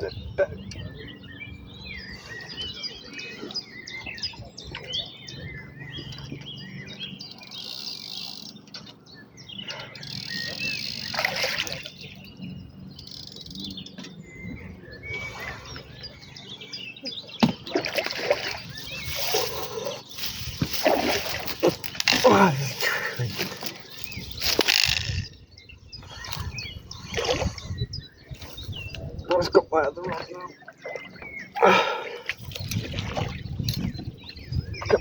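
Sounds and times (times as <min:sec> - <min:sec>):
birds chirping: 0:00.0 - 0:35.0
water splashing: 0:10.2 - 0:12.2, 0:17.4 - 0:25.0, 0:30.1 - 0:33.7.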